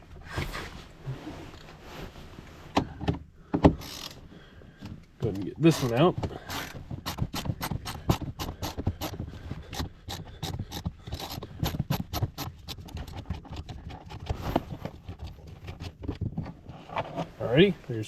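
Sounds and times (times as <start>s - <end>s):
hand driver clicking: 6.5s - 13.0s.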